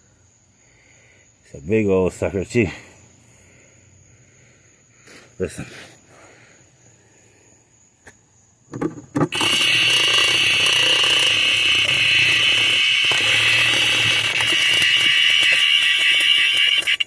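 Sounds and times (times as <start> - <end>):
cicada buzzing: 9.3 - 17.0.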